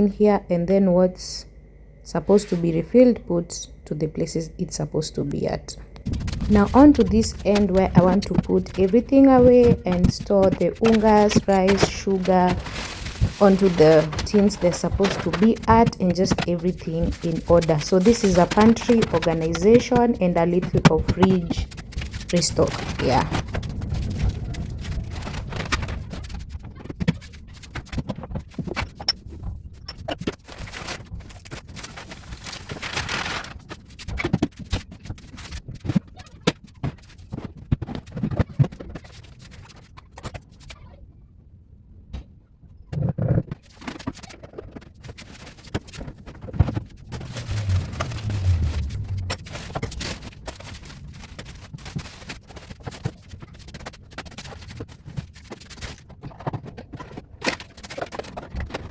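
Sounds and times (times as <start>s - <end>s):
packets rustling: 6.0s - 19.9s
groceries knocking and clicking: 6.0s - 40.6s, 50.0s - 58.9s
containers scraping: 6.1s - 21.3s.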